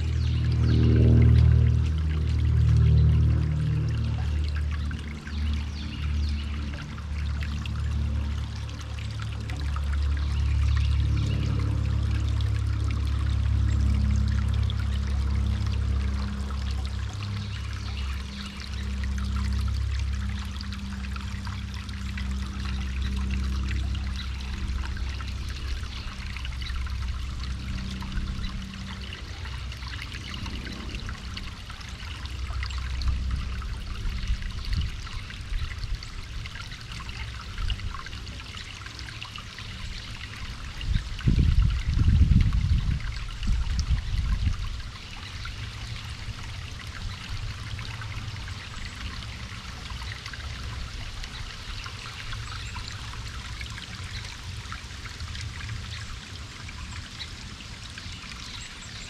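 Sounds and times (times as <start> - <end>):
low rumble: 0.0 - 36.4
water trickling: 0.0 - 59.0.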